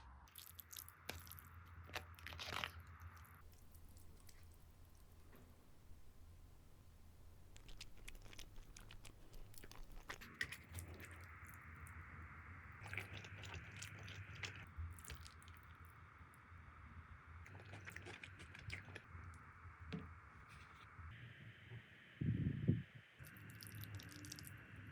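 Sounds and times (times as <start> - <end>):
person chewing food: 0.3 - 11.6, 12.8 - 15.8, 17.5 - 19.0, 23.3 - 24.5
faint steady hiss: 2.9 - 14.7.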